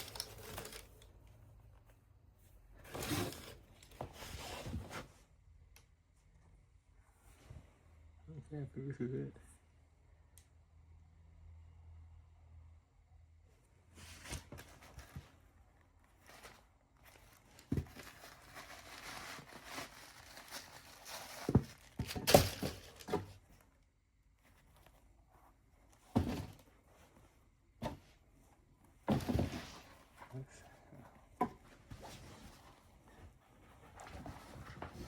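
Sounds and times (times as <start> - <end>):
tissue paper rustling: 0.0 - 1.0, 16.2 - 23.1.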